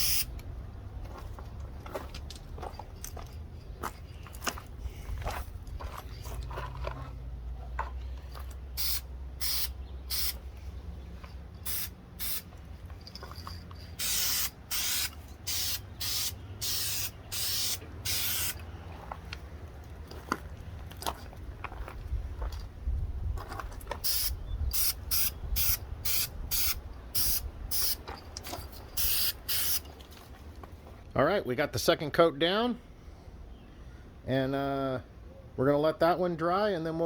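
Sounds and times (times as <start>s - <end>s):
spray paint can hissing bursts: 0.0s - 0.4s, 8.8s - 10.4s, 11.6s - 12.5s, 14.0s - 18.6s, 24.0s - 28.0s, 28.9s - 29.9s.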